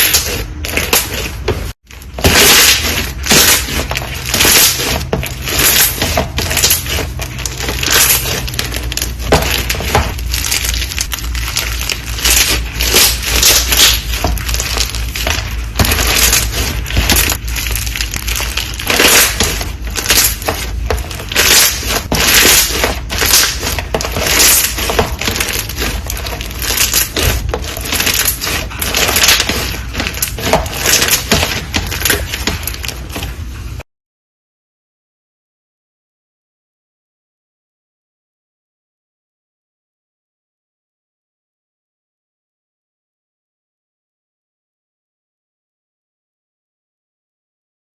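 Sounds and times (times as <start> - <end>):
crisp crunches: 0.0 - 33.4.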